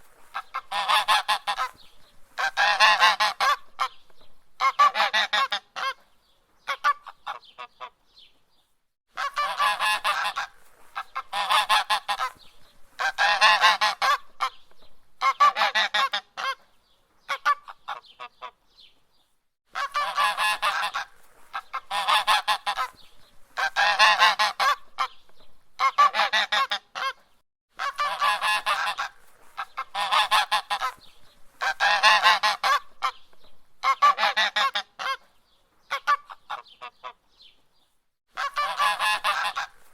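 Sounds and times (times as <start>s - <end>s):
goose honking: 0.3s - 1.8s, 2.4s - 3.9s, 4.6s - 6.0s, 9.2s - 12.4s, 13.0s - 14.5s, 15.2s - 16.6s, 19.7s - 23.0s, 23.6s - 25.2s, 25.8s - 27.2s, 27.8s - 33.2s, 33.8s - 35.2s, 38.4s - 39.9s.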